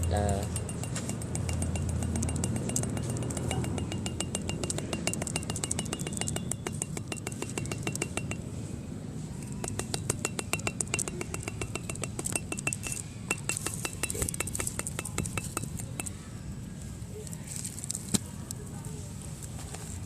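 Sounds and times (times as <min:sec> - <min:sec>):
light clinking taps on bottle: 0:00.0 - 0:08.4, 0:09.4 - 0:16.2.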